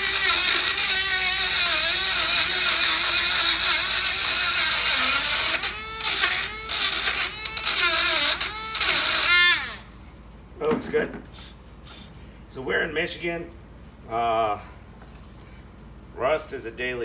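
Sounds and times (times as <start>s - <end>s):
rotary tool grinding metal: 0.0s - 10.0s.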